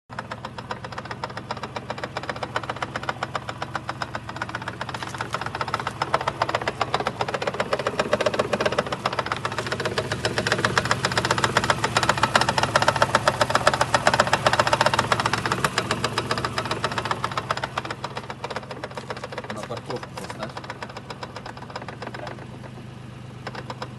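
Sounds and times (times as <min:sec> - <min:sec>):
transmission knocking: 0:00.1 - 0:23.9.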